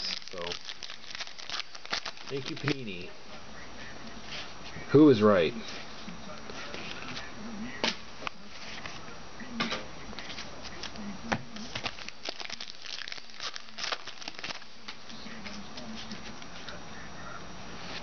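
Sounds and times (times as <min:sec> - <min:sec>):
cards handled: 0:00.0 - 0:02.9, 0:11.6 - 0:16.7
foil wrapper crinkling and tearing: 0:00.0 - 0:03.0, 0:11.6 - 0:15.2.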